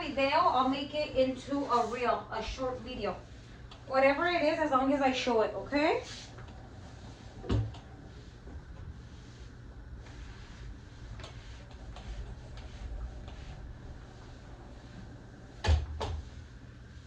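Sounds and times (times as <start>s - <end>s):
low steady hum: 0.0s - 17.0s.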